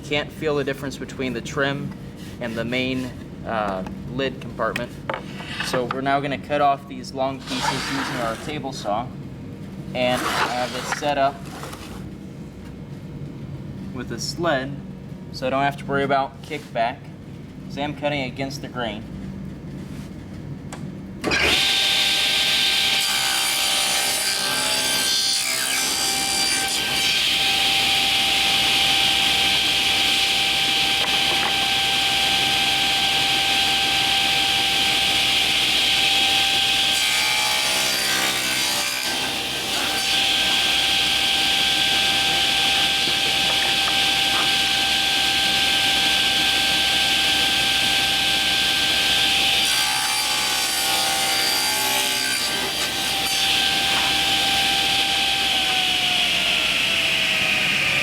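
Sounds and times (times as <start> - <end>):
saw blade cutting wood: 7.4 - 8.6, 10.0 - 11.9, 49.6 - 54.4
table saw whine: 7.4 - 8.8, 10.0 - 12.0, 21.2 - 58.0.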